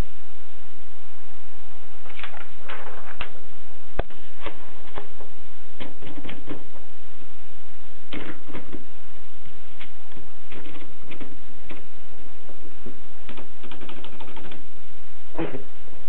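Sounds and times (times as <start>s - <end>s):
steady hiss: 0.0s - 16.0s
typewriter keys clicking: 10.5s - 11.8s, 13.3s - 14.6s.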